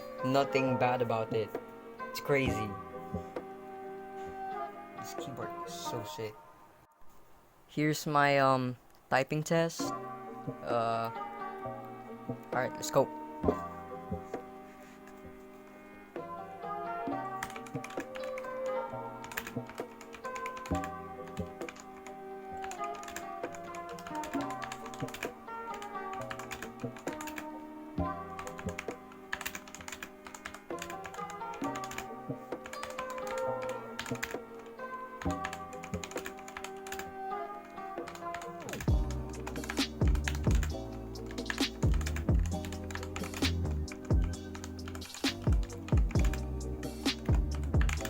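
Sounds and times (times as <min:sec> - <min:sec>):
background music: 0:00.0 - 0:48.0
fast mechanical keyboard typing: 0:17.4 - 0:18.4, 0:19.2 - 0:21.8, 0:22.6 - 0:27.4, 0:28.4 - 0:32.1, 0:32.7 - 0:34.4, 0:35.2 - 0:37.0, 0:38.3 - 0:46.4, 0:47.2 - 0:48.0.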